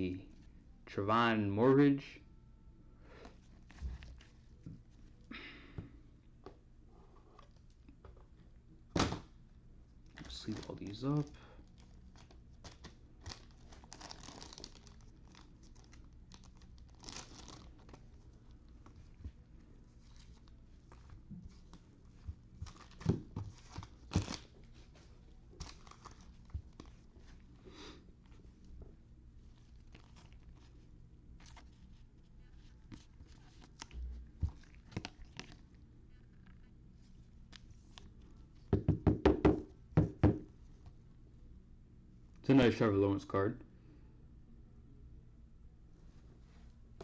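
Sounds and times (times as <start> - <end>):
plastic wrapper crinkling: 10.0 - 27.6, 29.4 - 35.8.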